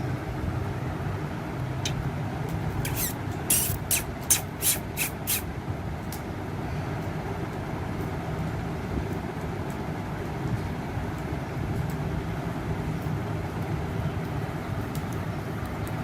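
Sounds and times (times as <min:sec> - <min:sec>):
parrot screeches: 0:02.8 - 0:05.4.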